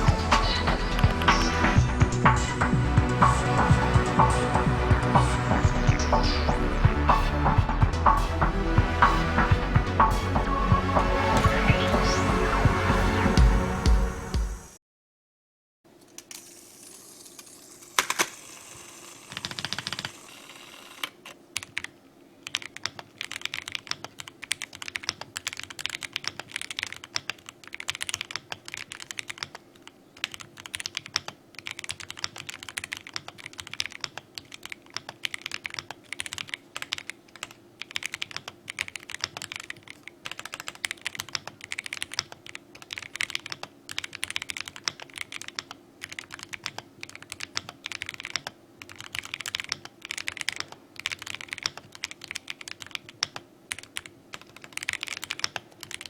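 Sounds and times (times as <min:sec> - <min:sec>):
mechanical keyboard typing: 0:00.0 - 0:01.8, 0:19.3 - 0:20.3, 0:20.9 - 0:56.0.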